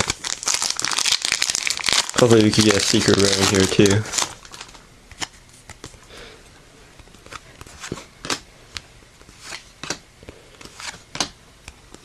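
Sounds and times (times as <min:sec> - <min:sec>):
trading cards flicked by hand: 0:09.2 - 0:10.0, 0:10.6 - 0:12.0.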